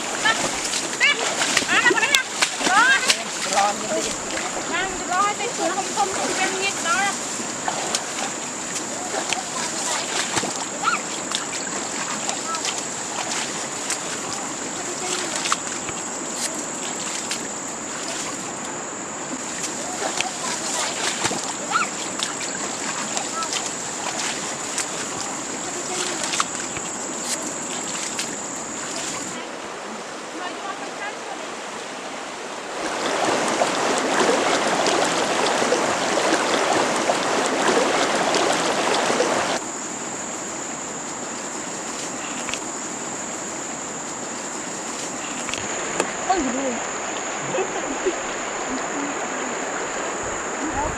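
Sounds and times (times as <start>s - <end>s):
water sloshing and splashing: 0.0s - 39.6s.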